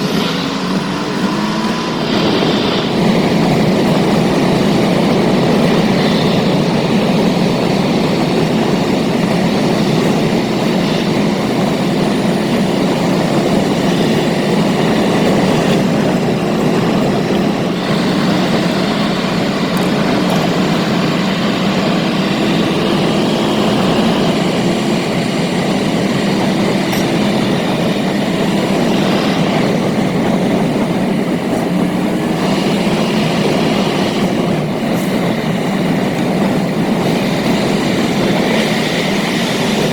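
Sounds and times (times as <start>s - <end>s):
car road and engine rumble: 0.0s - 39.9s.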